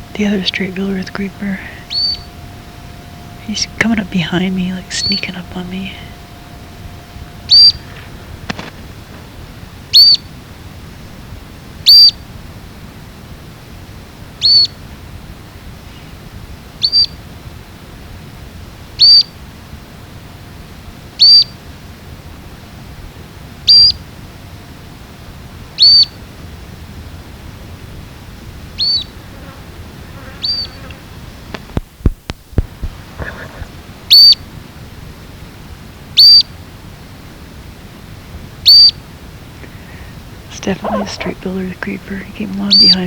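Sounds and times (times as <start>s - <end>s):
bird screeching: 1.7s - 2.5s, 7.4s - 8.2s, 9.9s - 10.3s, 11.9s - 12.2s, 14.4s - 14.8s, 16.8s - 17.2s, 19.0s - 19.3s, 28.8s - 29.1s, 30.4s - 30.8s, 34.1s - 34.4s, 36.2s - 36.5s, 38.7s - 39.0s.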